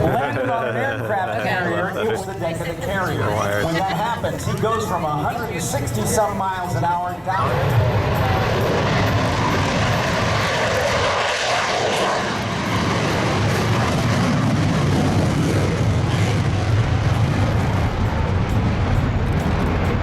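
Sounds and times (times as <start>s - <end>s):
jet fighter rushing roar: 7.4s - 20.0s.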